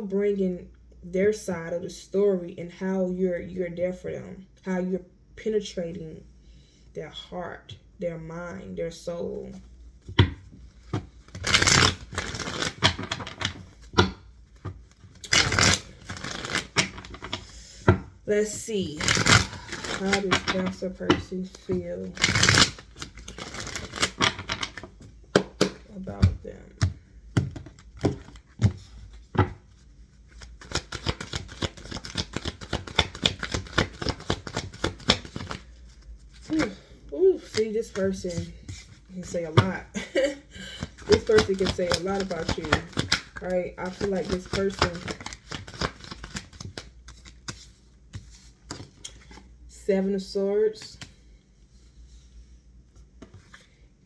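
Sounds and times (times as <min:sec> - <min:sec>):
cards being shuffled: 0:09.5 - 0:18.1, 0:18.8 - 0:49.5, 0:53.0 - 0:53.7
deck of cards knocking: 0:10.0 - 0:18.1, 0:23.4 - 0:29.7.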